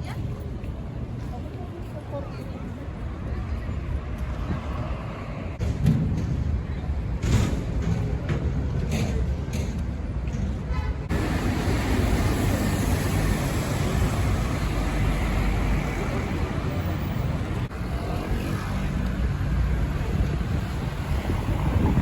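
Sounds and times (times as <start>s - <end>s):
city traffic rumble: 0.0s - 22.0s.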